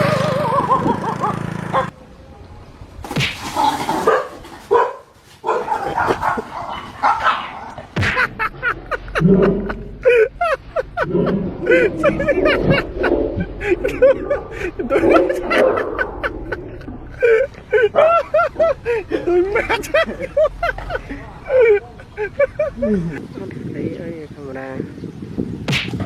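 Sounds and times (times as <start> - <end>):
dog barking rapidly: 3.9 - 7.8.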